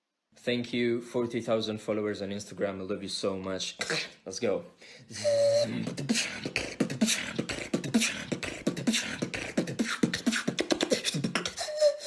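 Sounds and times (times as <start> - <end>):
person beatboxing: 3.8 - 4.2, 5.1 - 12.0.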